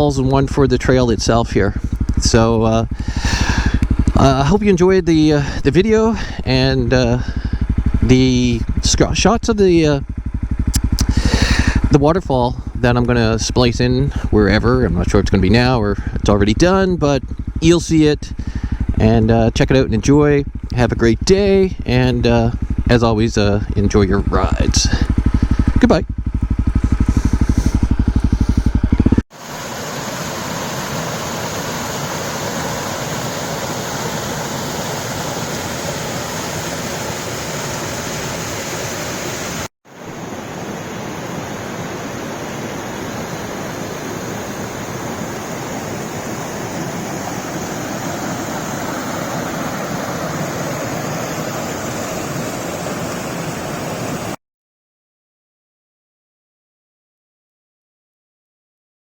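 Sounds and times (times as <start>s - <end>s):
motorcycle engine idling: 0.0s - 29.2s
waterfall rushing: 1.8s - 7.0s, 29.4s - 54.4s.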